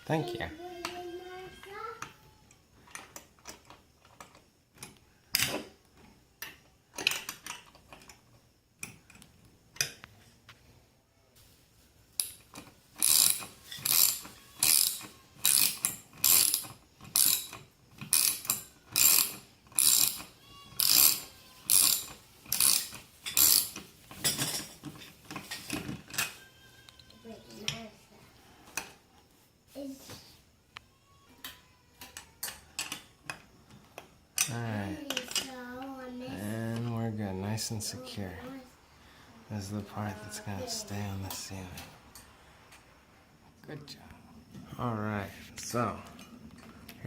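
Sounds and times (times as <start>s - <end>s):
ratchet wrench clicking: 13.0s - 23.8s.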